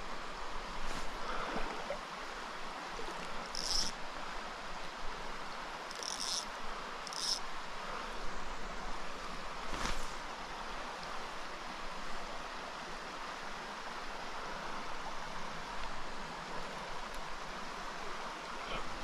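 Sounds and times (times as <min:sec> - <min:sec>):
stream running over rock: 0:00.0 - 0:19.0
high-pitched buzzy calls: 0:03.5 - 0:03.9, 0:07.1 - 0:07.4.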